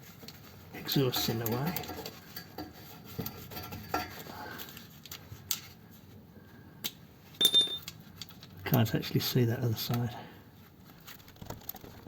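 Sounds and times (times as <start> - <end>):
hand tools clinking on metal: 7.4 - 7.9
metallic clatter: 7.4 - 7.9.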